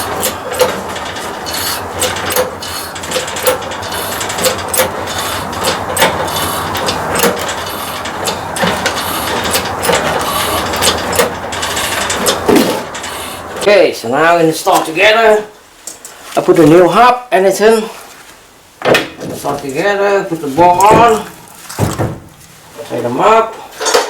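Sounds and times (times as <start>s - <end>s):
press tool clicking and scraping metal: 0.0s - 13.7s.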